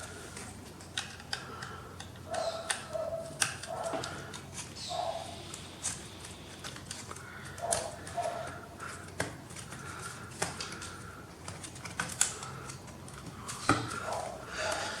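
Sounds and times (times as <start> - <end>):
small parts clicking and tapping: 0.0 - 4.7.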